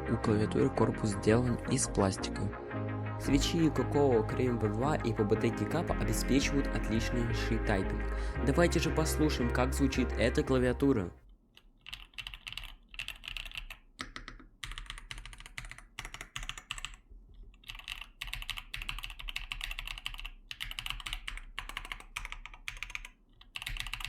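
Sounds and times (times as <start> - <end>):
mechanical keyboard key clacks: 17.6 - 24.0.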